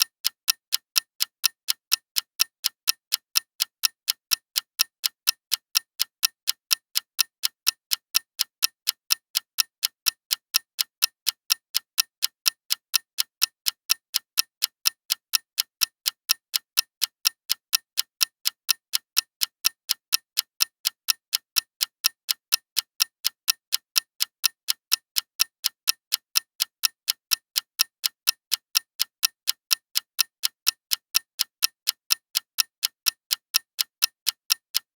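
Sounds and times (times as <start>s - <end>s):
clock ticking: 0.0s - 7.6s.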